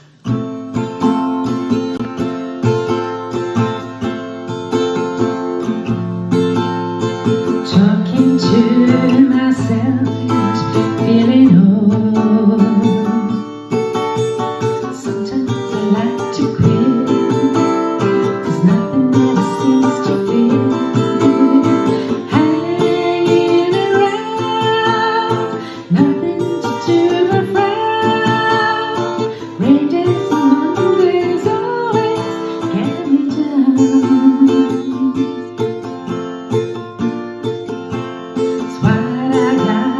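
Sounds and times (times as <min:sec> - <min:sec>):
acoustic guitar chords: 0:00.0 - 0:39.9
person singing: 0:07.6 - 0:13.4, 0:14.8 - 0:35.4, 0:38.6 - 0:39.9.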